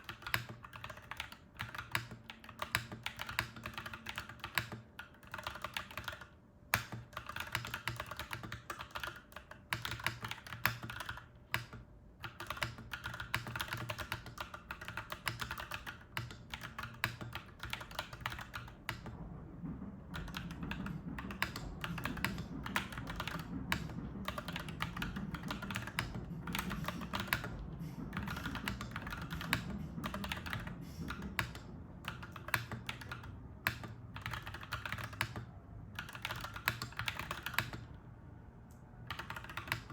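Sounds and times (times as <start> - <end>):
mechanical keyboard typing: 0.0 - 19.2, 20.0 - 38.0, 39.0 - 39.9
low rumble: 18.7 - 34.1.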